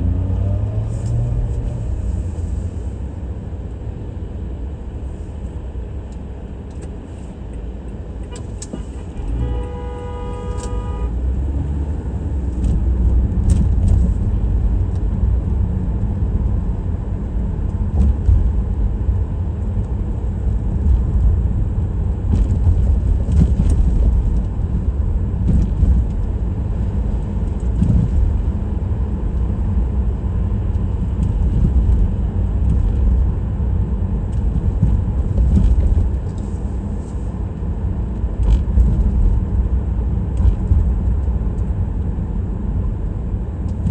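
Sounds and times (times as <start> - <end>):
car driving rumble: 0.0 - 43.9
car horn: 8.3 - 11.2.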